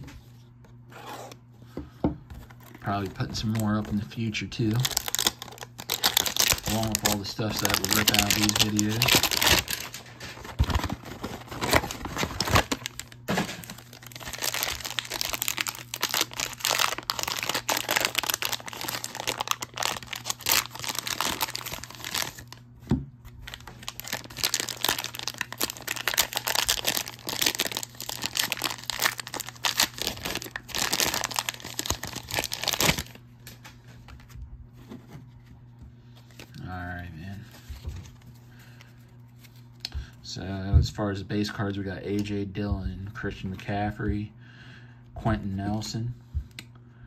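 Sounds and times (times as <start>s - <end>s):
wrapper crinkling and tearing: 2.5s - 22.6s, 23.4s - 33.6s.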